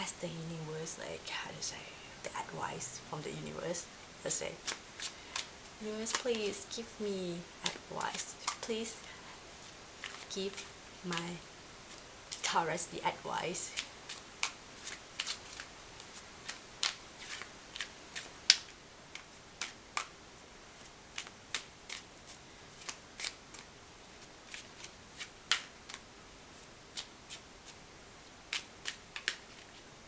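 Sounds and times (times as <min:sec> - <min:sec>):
cards being shuffled: 0:04.5 - 0:06.7, 0:09.6 - 0:11.3, 0:13.6 - 0:20.1, 0:20.8 - 0:26.0, 0:28.5 - 0:29.9.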